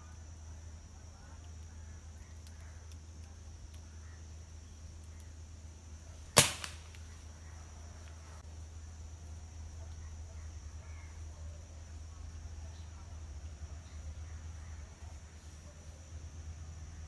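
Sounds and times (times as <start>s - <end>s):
dart gun shot: 6.4s - 7.0s.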